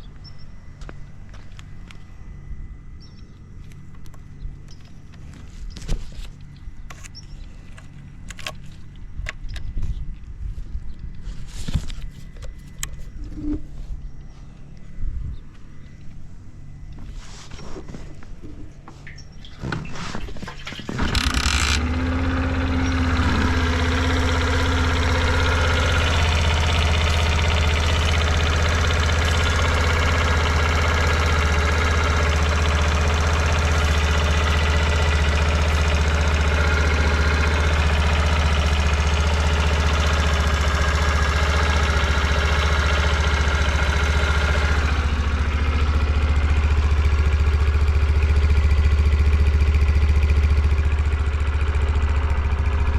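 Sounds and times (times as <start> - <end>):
motorcycle engine starting and idling: 3.7 - 9.8, 16.9 - 52.9.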